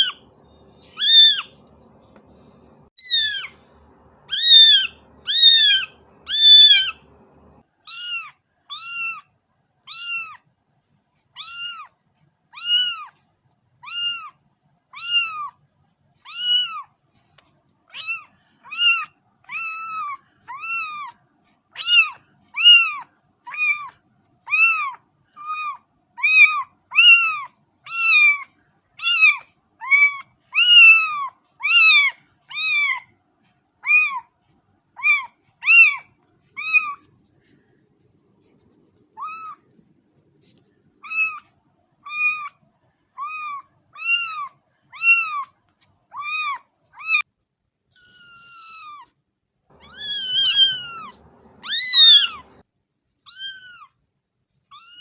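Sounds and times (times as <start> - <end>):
cat meowing: 0.0 - 9.2, 9.9 - 10.4, 11.4 - 11.9, 12.5 - 13.2, 13.8 - 14.4, 15.0 - 15.6, 16.2 - 16.9, 17.9 - 21.2, 21.8 - 23.9, 24.5 - 33.1, 33.8 - 34.2, 35.0 - 37.1, 39.2 - 39.7, 41.0 - 41.4, 42.0 - 42.6, 43.2 - 45.5, 46.1 - 47.2, 48.0 - 49.1, 49.8 - 52.6, 53.2 - 54.0, 54.7 - 55.0.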